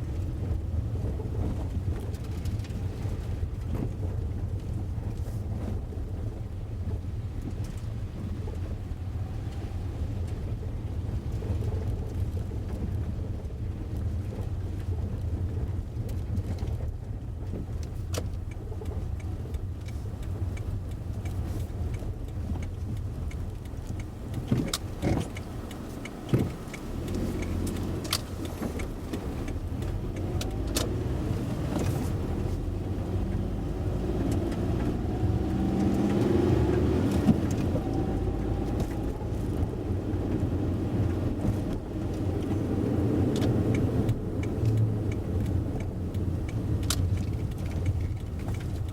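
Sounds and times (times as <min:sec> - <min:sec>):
road and engine rumble: 0:00.0 - 0:48.9
clicks knocks and rattles: 0:17.5 - 0:31.0, 0:43.3 - 0:48.9.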